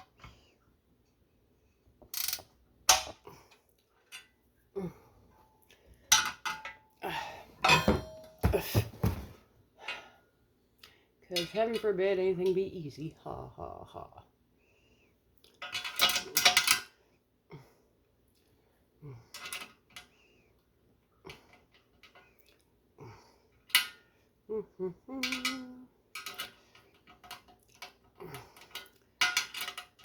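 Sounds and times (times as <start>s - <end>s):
metal tools clinking: 7.6s - 8.8s.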